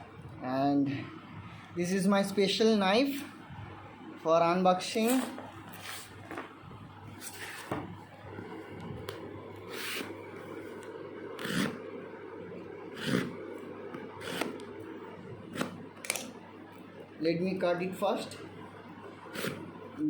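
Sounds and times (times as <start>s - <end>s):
steady low hum: 0.0s - 20.0s
knife scraping packaging: 11.4s - 11.8s, 13.0s - 13.4s, 14.2s - 14.6s.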